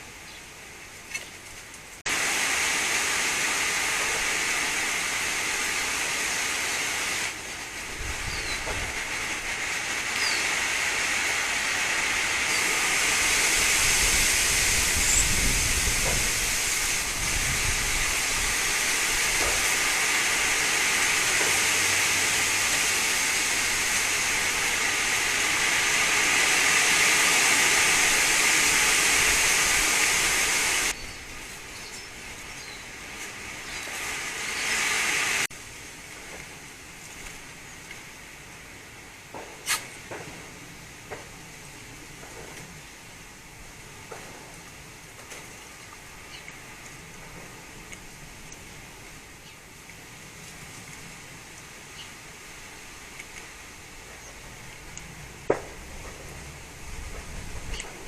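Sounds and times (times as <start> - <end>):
wind rushing through trees: 0.0 - 58.0
wind buffeting microphone: 7.8 - 9.7, 12.6 - 21.3, 55.7 - 58.0.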